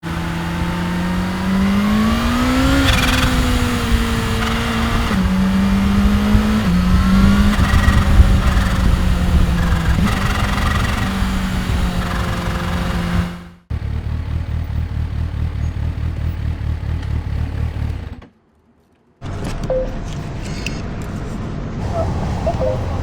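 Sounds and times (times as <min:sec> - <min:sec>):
motorcycle engine revving and shifting: 0:00.0 - 0:18.2.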